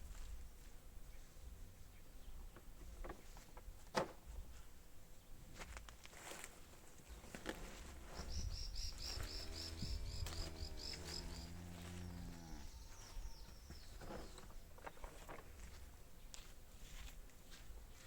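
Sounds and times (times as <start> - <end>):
cow mooing: 9.3 - 12.9.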